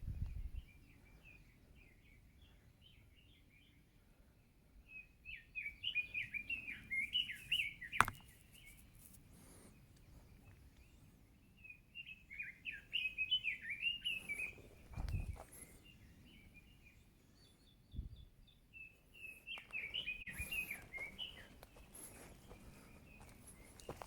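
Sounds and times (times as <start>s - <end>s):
songbird warbling: 5.3s - 8.8s, 12.0s - 14.7s.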